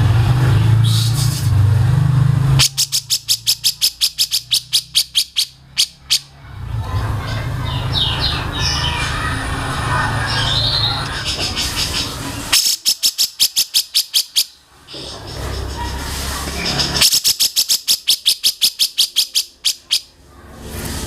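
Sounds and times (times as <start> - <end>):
songbird rapid sharp notes: 2.6 - 6.3, 9.9 - 16.0, 16.6 - 20.1.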